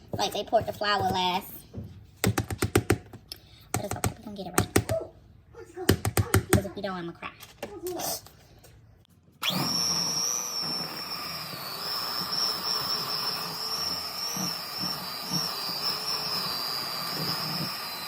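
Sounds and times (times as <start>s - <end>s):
electric mixer motor whine: 9.4s - 18.0s.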